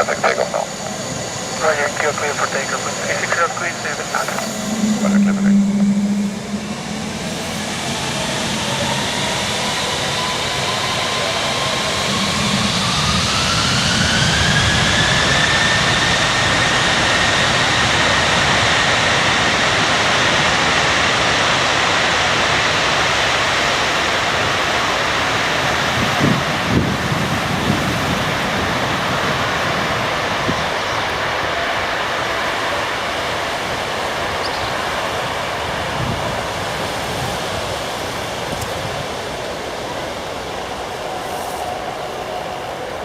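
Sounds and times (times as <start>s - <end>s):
jet engine whine: 0.0s - 43.0s
jet engines spooling up: 0.0s - 43.0s.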